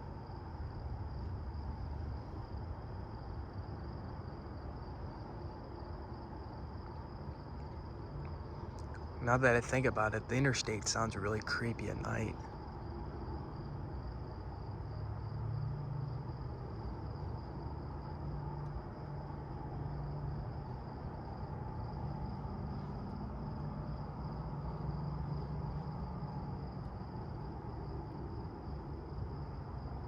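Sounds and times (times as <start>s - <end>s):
distant traffic drone: 0.0s - 30.0s
insects trilling: 0.0s - 30.0s.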